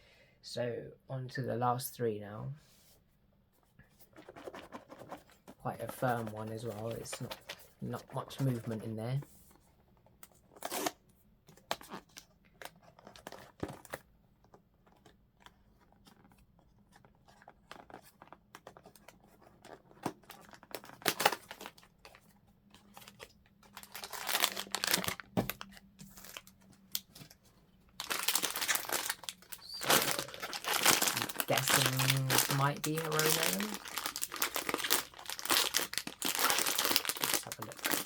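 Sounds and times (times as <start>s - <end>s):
packaging tearing and crinkling: 10.6s - 11.0s, 19.6s - 22.2s, 22.8s - 27.3s, 28.0s - 38.0s
packaging taps and rustles: 11.5s - 38.0s.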